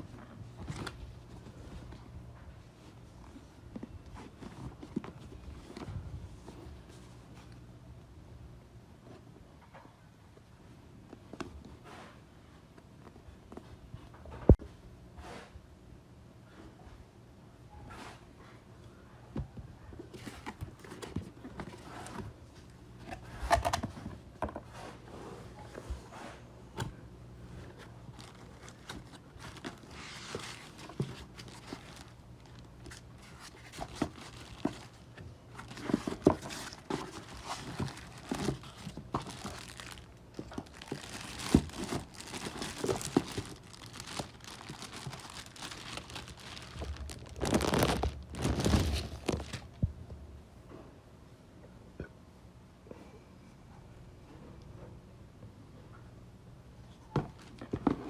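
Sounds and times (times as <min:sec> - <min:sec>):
packaging crinkling: 0:28.1 - 0:35.0, 0:35.6 - 0:49.9.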